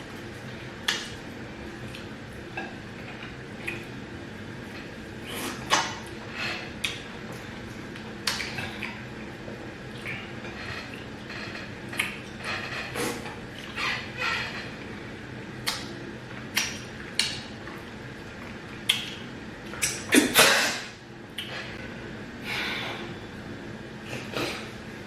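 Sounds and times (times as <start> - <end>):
wet chewing smacks and clicks: 11.9 - 12.3, 15.6 - 17.4, 18.2 - 20.0.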